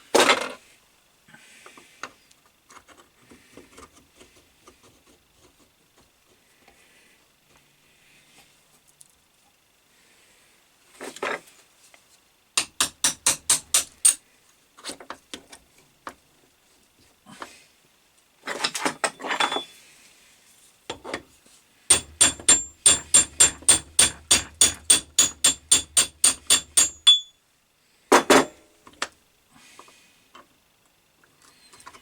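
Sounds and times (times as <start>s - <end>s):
rapid metal-on-metal ringing strokes: 21.9s - 27.4s.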